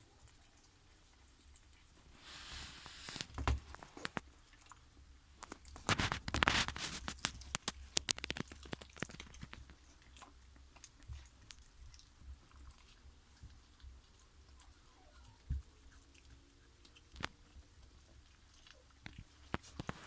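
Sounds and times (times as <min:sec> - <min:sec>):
dog chewing and crunching: 0:00.0 - 0:02.2, 0:02.8 - 0:20.0.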